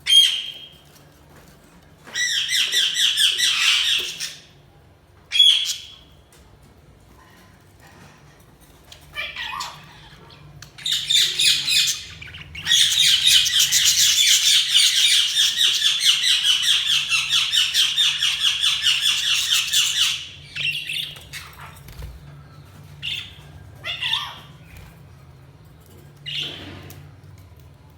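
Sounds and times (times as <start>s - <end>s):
budgerigars chattering: 9.4s - 22.1s.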